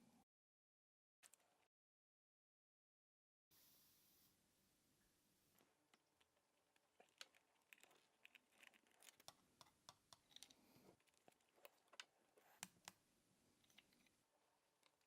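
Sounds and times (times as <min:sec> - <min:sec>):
small objects clicking and tapping: 0:05.9 - 0:13.0.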